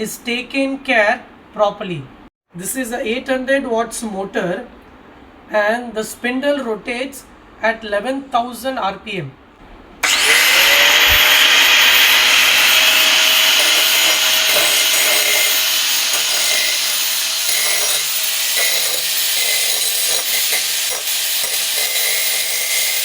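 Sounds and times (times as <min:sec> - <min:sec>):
angle grinder whining: 0:10.0 - 0:23.0.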